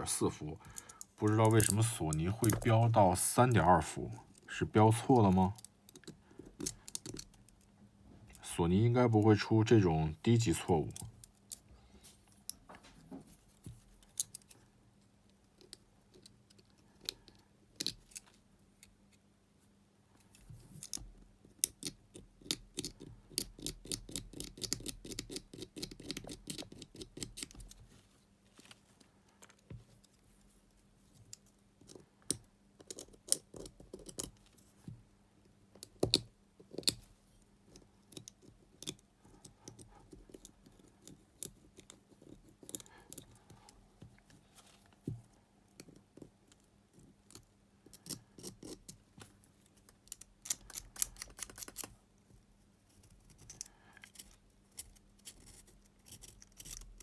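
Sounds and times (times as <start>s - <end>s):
tools clicking and tapping on plastic: 0.6s - 2.7s, 5.2s - 7.6s, 35.8s - 37.0s
fast scratching or snipping: 50.4s - 51.9s, 52.9s - 57.0s.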